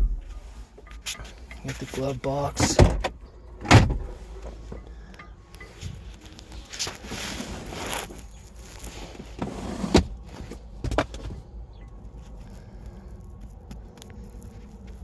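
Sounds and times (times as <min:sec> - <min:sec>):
rustling and handling noise: 0:05.5 - 0:15.0.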